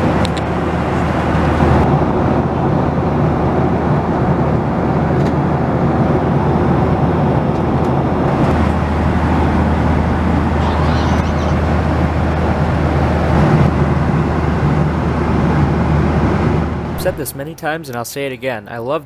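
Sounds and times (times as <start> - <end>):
airflow and engine rushing: 0.0 - 18.9
low hum: 6.1 - 18.5.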